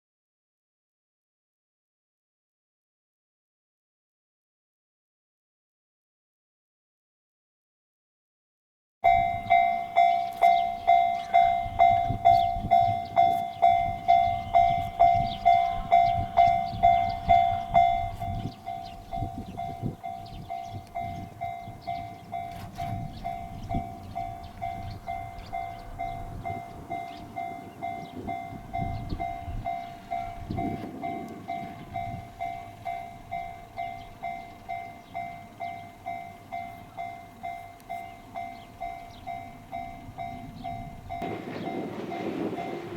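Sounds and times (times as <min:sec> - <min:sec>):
level-crossing warning bell clanging: 0:09.0 - 0:42.9
low rumble: 0:40.1 - 0:42.9.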